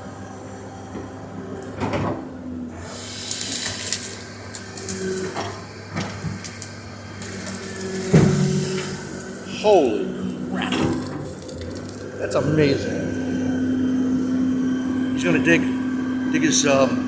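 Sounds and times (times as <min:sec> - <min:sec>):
excavator engine humming: 0:00.0 - 0:17.0
high hydraulic hiss: 0:02.8 - 0:04.2.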